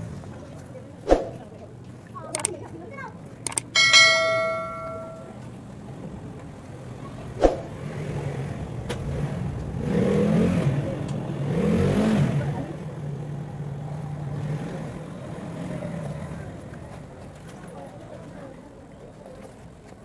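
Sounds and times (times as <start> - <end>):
vehicle engine revving: 7.2 - 17.1.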